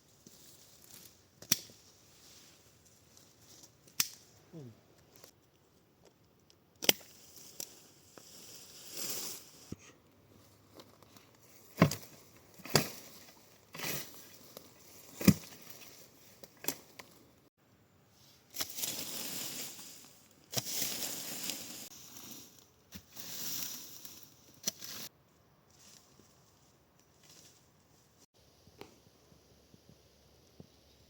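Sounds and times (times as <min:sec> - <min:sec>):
rustling and crunching: 0:18.4 - 0:28.3.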